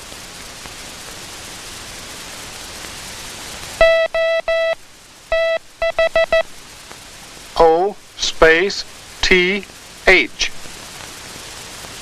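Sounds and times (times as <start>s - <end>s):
film soundtrack hiss: 0.0s - 12.0s
morse code tone: 3.8s - 6.4s.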